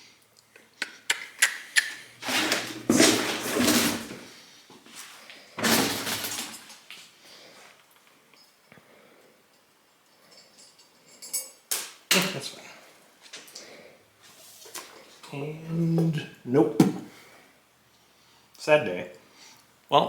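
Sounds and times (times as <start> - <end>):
metal clattering and scraping: 2.2 - 4.4.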